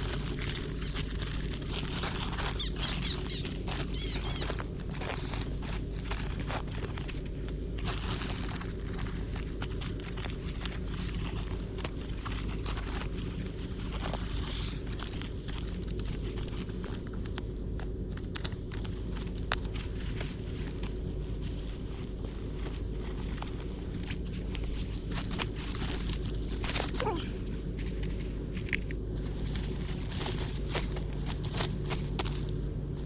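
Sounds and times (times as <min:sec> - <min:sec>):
material rustling and crinkling: 0:00.0 - 0:33.0.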